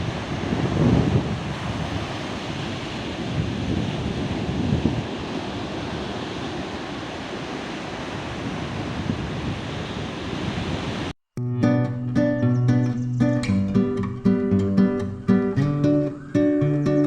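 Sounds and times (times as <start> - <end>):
sea waves washing on shore: 0.0 - 11.1
wind buffeting microphone: 0.0 - 11.1.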